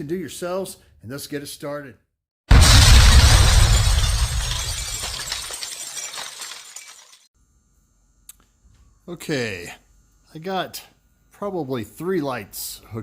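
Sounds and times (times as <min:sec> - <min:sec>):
glass shattering with deep boom: 0:02.5 - 0:07.2.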